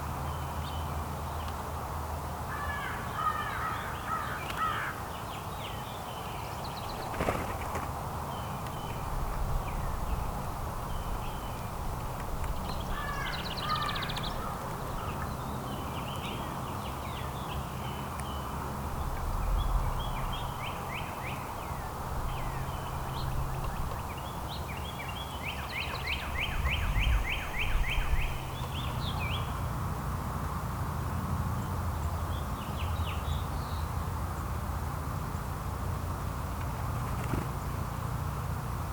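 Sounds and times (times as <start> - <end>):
small songbirds chirping: 0.0 - 29.8, 31.0 - 34.6
bird trill: 12.6 - 15.5.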